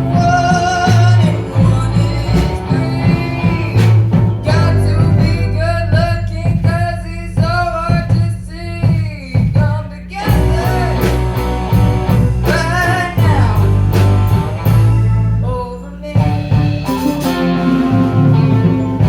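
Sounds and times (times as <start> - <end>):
piano: 0.0 - 8.3, 16.2 - 19.0
bass guitar: 0.0 - 19.0
drums: 0.0 - 19.0
guitar: 0.0 - 19.0
lead singer: 0.0 - 19.0.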